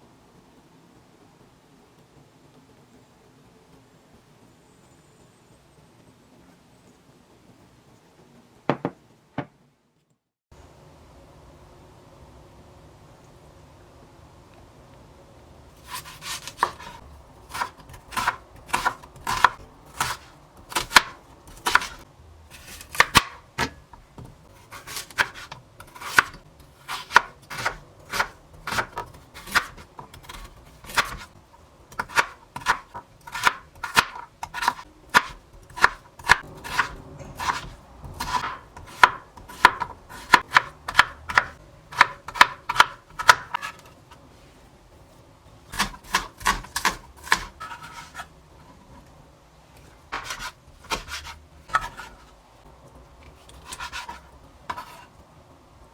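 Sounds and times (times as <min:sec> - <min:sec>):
knife chopping on cutting board: 0:15.8 - 0:31.3, 0:31.9 - 0:43.9, 0:45.8 - 0:48.3, 0:50.1 - 0:52.2, 0:53.6 - 0:55.0.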